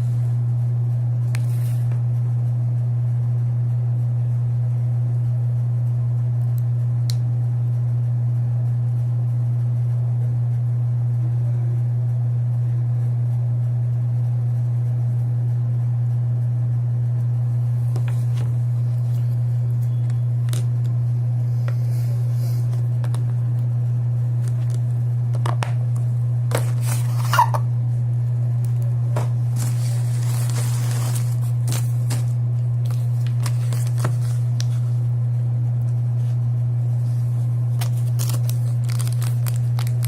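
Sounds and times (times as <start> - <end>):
steady low hum: 0.0 - 40.0
packaging being handled: 24.4 - 25.8, 26.5 - 27.5, 29.2 - 34.9, 37.0 - 40.0.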